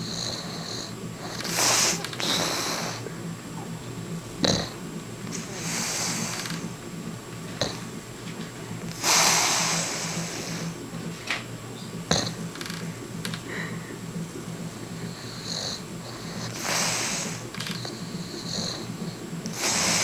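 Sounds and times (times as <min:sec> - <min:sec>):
man snoring: 0:00.0 - 0:03.2, 0:04.3 - 0:06.8, 0:07.6 - 0:07.9, 0:08.9 - 0:10.8, 0:12.1 - 0:14.1, 0:14.7 - 0:20.0.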